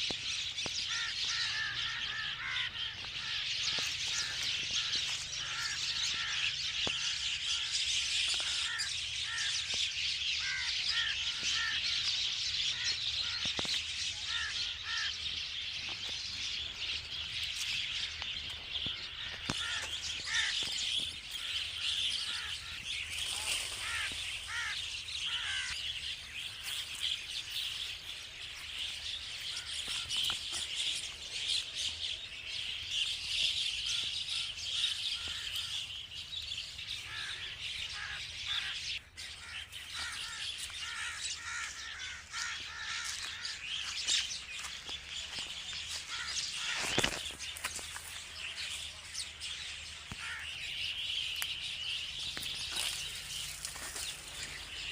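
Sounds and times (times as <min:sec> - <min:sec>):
myna birds chattering: 0:00.0 - 0:54.9.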